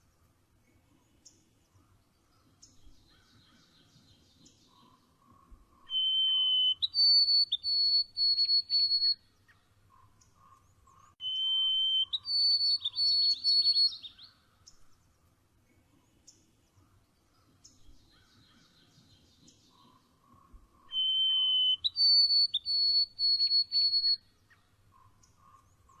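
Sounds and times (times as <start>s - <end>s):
songbird whistling phrase: 5.9s - 9.2s, 11.2s - 14.3s, 20.9s - 24.2s.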